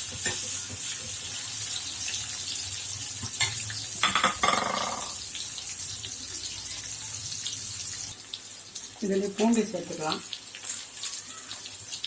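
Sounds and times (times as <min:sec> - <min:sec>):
onions sizzling in hot oil: 0:00.0 - 0:12.0.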